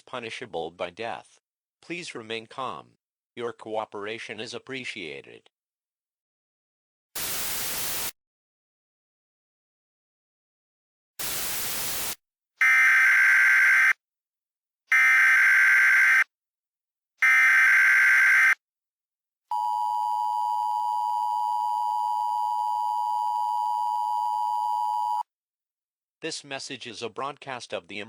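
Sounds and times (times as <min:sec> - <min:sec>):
static hiss: 0:07.2 - 0:08.1, 0:11.2 - 0:12.2.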